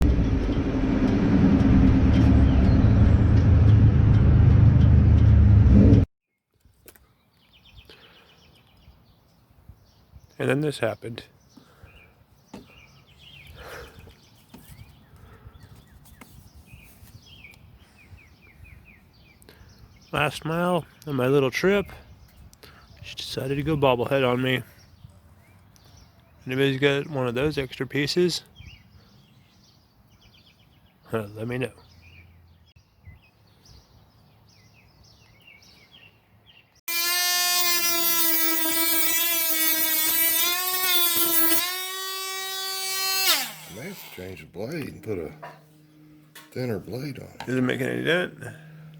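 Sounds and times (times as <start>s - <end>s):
small birds chirping: 6.4s - 36.9s
power tool cutting with high whine: 36.9s - 44.4s.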